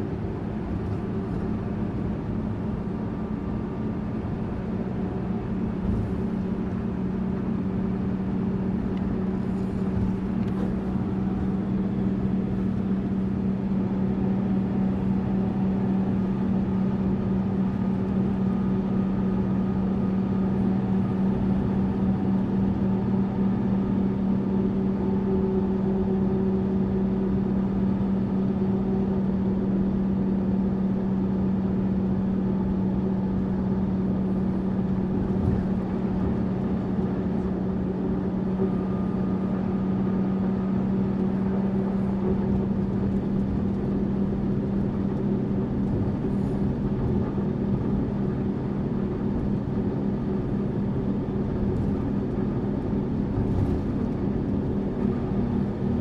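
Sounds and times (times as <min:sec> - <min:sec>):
bus engine drone: 0:00.0 - 0:56.0
road and cabin noise: 0:00.0 - 0:56.0.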